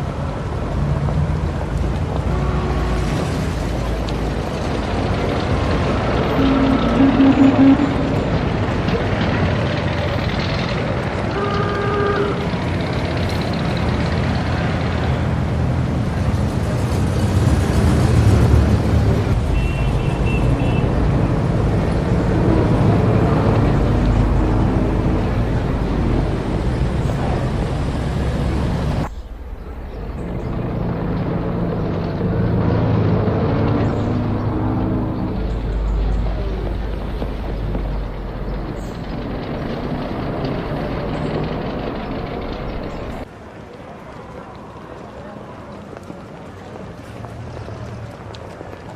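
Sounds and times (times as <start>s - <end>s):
motor traffic: 0.0s - 48.9s
low car horn honking: 6.2s - 8.1s, 11.3s - 12.5s, 19.5s - 21.0s
higher horn blast: 6.2s - 8.3s, 11.3s - 12.6s.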